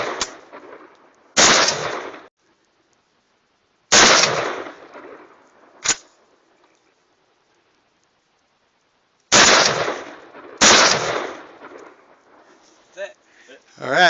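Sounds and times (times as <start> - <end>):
rifle shots with rolling echo: 0.0 - 2.3, 3.9 - 6.4, 9.3 - 12.6
sharp crack: 0.0 - 2.3, 3.9 - 6.8, 9.2 - 13.1.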